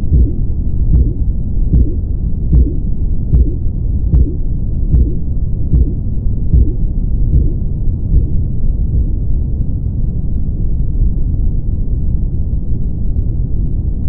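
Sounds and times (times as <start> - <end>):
soft heartbeat thumps: 0.0 - 9.3
low rumble through stethoscope: 0.0 - 14.0.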